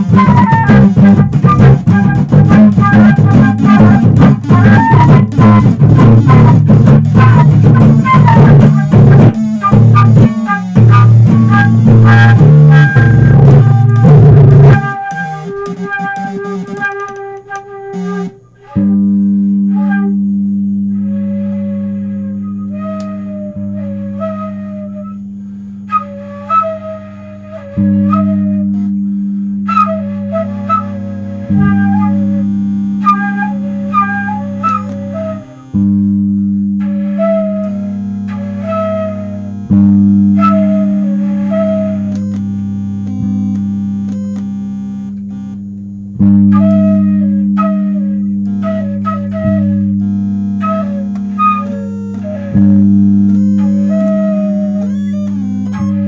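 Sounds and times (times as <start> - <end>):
flute melody: 0.0 - 56.0
low guitar and bass notes: 0.0 - 56.0.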